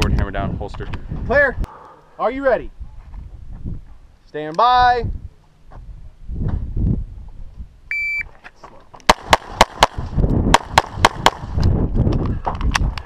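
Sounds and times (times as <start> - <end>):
shot timer beep: 7.9 - 8.2
pistol shots: 9.1 - 11.5.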